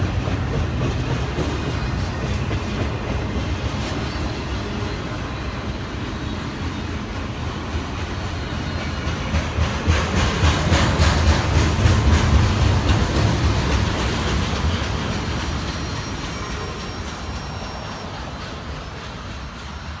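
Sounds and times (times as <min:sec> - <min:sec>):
train rumbling past: 0:00.0 - 0:20.0
high wheel squeal: 0:01.2 - 0:09.6, 0:12.6 - 0:20.0
wheels clicking over rail joints: 0:07.7 - 0:17.4.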